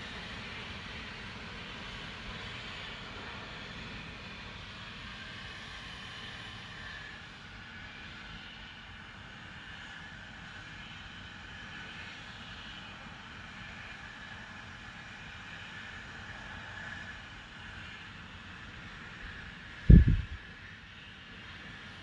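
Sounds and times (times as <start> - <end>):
low rumble: 19.9 - 20.4.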